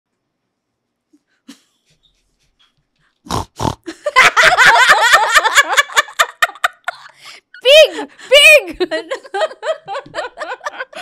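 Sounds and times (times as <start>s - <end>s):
person snorting like a pig: 3.2s - 3.9s.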